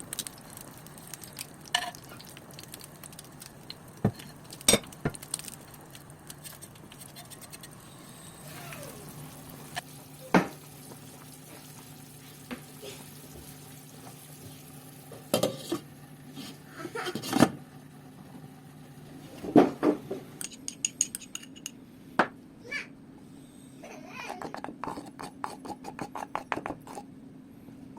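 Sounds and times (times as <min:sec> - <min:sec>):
steady low hum: 0:00.0 - 0:27.9
utensils and dishes clinking: 0:15.3 - 0:15.8, 0:20.4 - 0:21.8.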